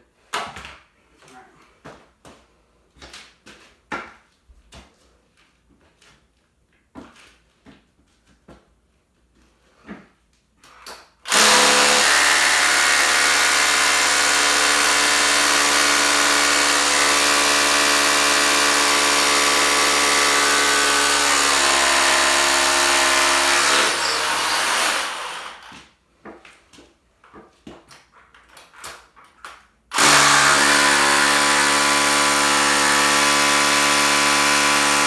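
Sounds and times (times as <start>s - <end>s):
rotary hammer drilling into concrete: 11.3s - 25.8s, 29.9s - 35.0s.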